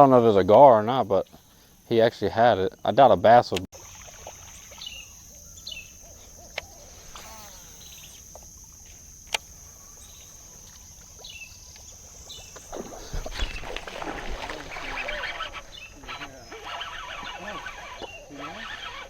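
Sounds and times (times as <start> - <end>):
high-pitched insect drone: 3.8 - 19.0
falling bird chirps: 4.4 - 19.0
sharp clicks: 9.2 - 9.5.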